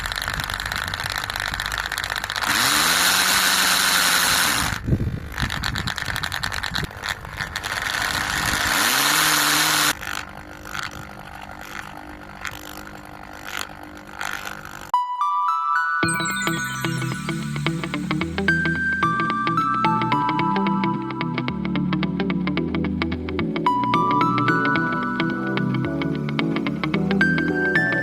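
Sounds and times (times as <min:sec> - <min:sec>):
hammer drill motor whining: 0:01.9 - 0:04.8, 0:07.6 - 0:14.9.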